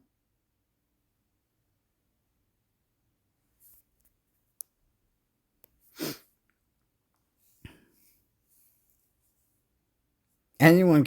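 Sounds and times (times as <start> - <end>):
person breathing close to microphone: 6.0 - 6.2.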